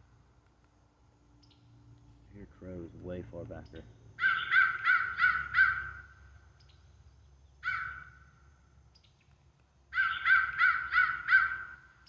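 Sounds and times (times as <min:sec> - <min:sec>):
recorded crow caws: 0:04.2 - 0:06.5, 0:07.6 - 0:08.6, 0:09.9 - 0:12.0.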